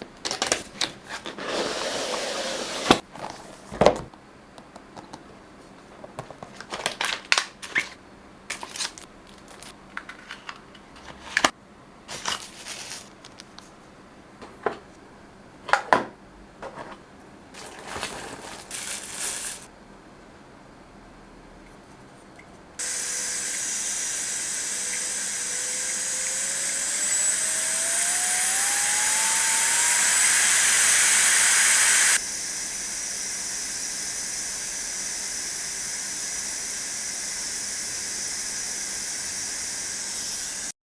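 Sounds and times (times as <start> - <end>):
handheld fan rushing air: 1.4 - 3.0, 22.8 - 40.8
fan motor whine: 22.8 - 40.7.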